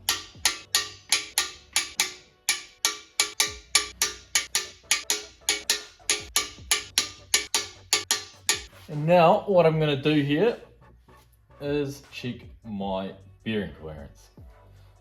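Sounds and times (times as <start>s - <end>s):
sharp ringing percussive hits: 0.0s - 8.7s
background music: 0.0s - 15.0s.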